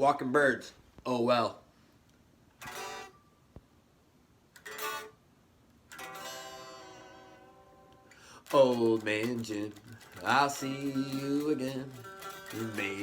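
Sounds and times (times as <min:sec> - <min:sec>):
strummed string instrument chords: 0:05.9 - 0:13.0.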